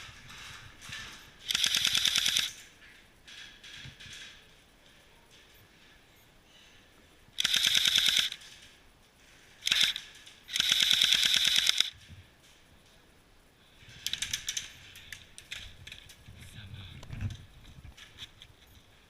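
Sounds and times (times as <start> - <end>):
airsoft gun full-auto bursts: 1.4 - 2.6, 7.4 - 8.4, 9.6 - 12.0.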